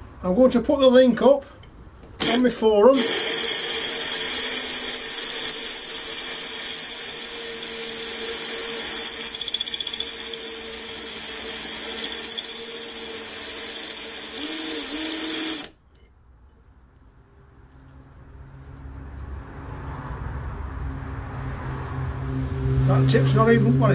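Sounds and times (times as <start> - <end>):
electric drill motor whine: 2.2 - 2.4, 3.0 - 15.8
drill bit grinding glass: 3.0 - 15.8.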